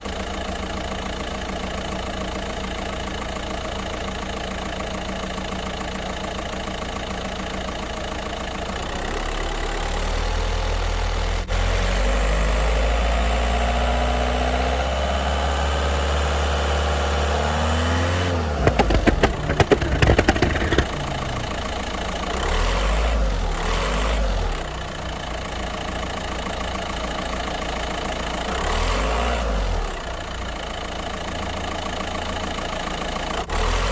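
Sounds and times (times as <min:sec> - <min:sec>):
car engine idling and revving: 0:00.0 - 0:33.9
sharp exhaust cracks: 0:18.4 - 0:23.0.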